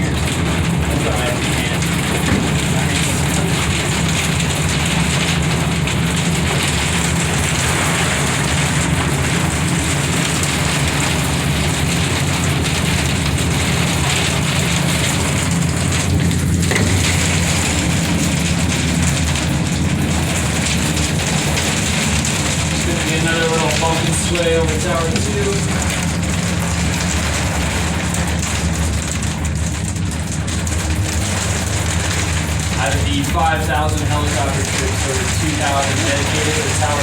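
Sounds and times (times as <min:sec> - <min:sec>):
heavy rain pelting: 0:00.0 - 0:37.0
low steady hum: 0:00.0 - 0:37.0.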